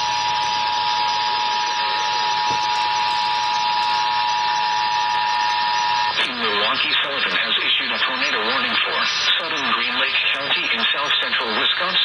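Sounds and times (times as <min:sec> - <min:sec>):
steady electronic attention tone: 0:00.0 - 0:07.2.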